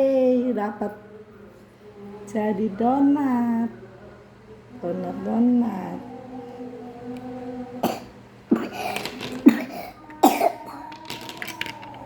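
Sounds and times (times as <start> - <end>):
child coughing: 7.8 - 10.9.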